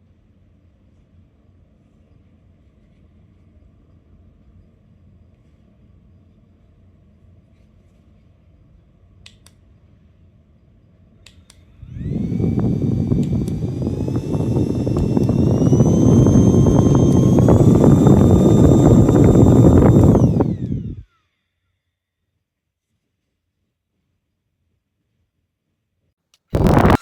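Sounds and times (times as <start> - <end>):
turbo fan air rush and motor whine: 11.5 - 21.4, 26.5 - 27.0
clicks: 26.6 - 27.0.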